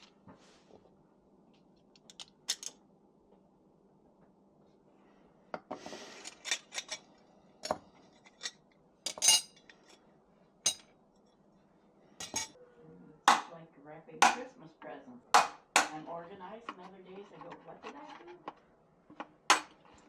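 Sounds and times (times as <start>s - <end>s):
metallic clinks and clanks: 8.3s - 9.8s, 10.7s - 10.9s, 12.2s - 12.5s.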